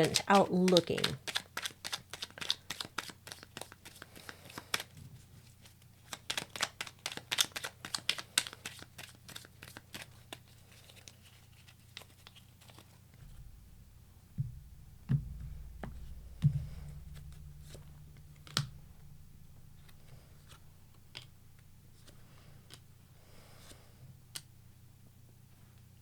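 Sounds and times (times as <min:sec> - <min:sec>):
cards being shuffled: 0:00.0 - 0:04.9, 0:05.7 - 0:12.9.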